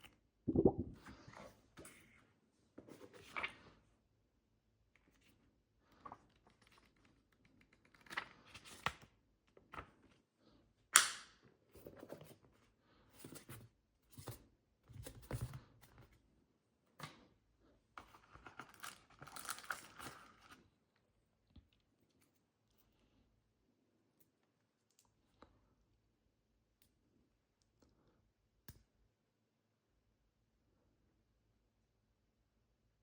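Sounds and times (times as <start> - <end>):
packaging rustling and scraping: 18.1 - 20.6.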